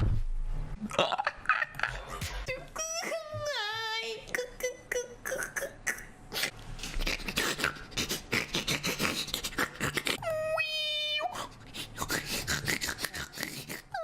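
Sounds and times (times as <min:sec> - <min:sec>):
woman making mouth noises: 0:04.3 - 0:10.4, 0:11.3 - 0:14.0.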